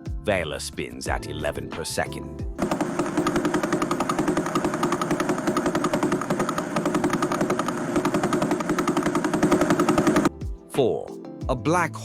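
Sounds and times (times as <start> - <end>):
rapid regular ticking: 2.6 - 10.3
steady hum: 2.6 - 10.3.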